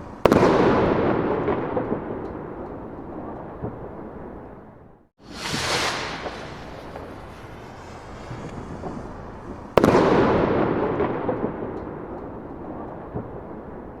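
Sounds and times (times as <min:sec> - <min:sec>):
firework bang with rumbling echo: 0:00.0 - 0:02.2, 0:05.2 - 0:12.1
firework rocket whooshing: 0:05.2 - 0:11.6.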